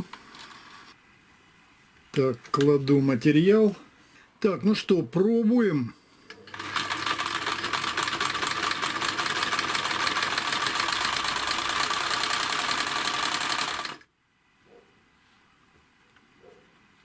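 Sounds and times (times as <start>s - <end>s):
sewing machine clattering: 6.5s - 14.0s.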